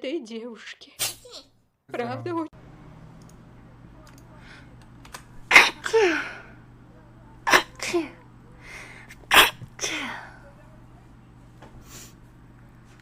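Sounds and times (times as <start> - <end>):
person sneezing: 1.0 - 1.5, 5.5 - 6.5, 7.5 - 8.2, 9.0 - 10.3.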